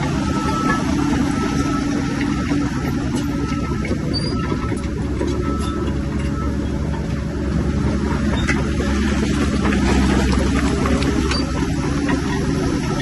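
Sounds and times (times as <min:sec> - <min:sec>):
bulldozer diesel engine running: 0:00.0 - 0:13.0
faint squeaks and clicks: 0:03.1 - 0:07.0, 0:08.3 - 0:08.7, 0:11.2 - 0:12.3.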